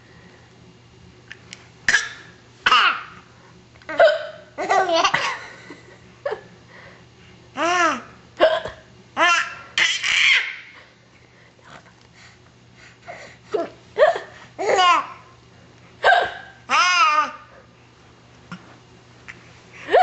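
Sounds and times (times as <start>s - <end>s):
baby laughing and squealing: 9.2s - 10.7s.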